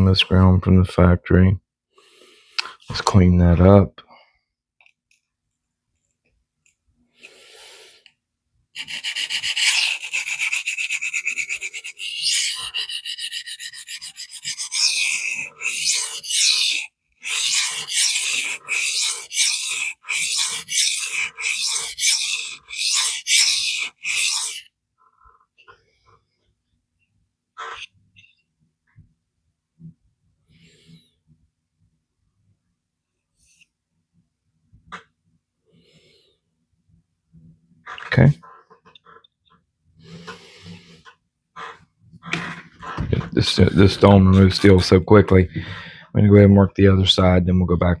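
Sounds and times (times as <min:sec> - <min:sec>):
knife scraping on sharpening stone: 0:08.8 - 0:24.6.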